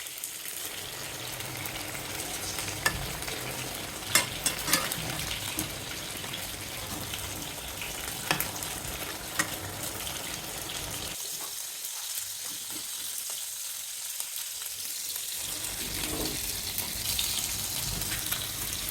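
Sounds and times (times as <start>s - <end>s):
food sizzling in a pan: 0.0s - 18.9s
utensil clicking against pan: 2.4s - 10.2s.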